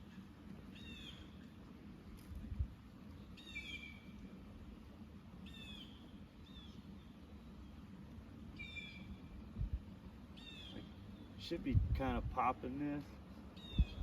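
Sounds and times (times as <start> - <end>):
bird calling: 0.0 - 1.6, 3.2 - 4.2, 5.4 - 7.9, 8.5 - 9.4, 10.3 - 11.4, 13.5 - 14.0.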